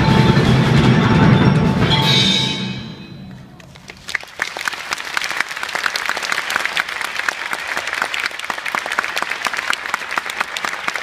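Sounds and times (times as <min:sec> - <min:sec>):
audience applauding: 0:03.6 - 0:11.0.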